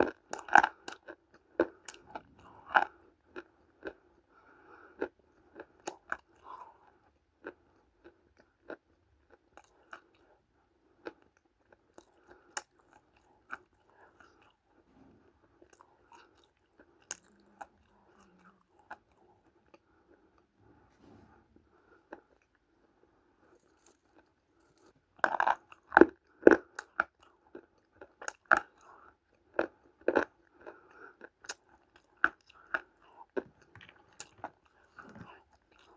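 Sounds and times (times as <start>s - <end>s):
person chewing: 0.0s - 10.3s, 10.9s - 21.0s, 23.4s - 35.9s.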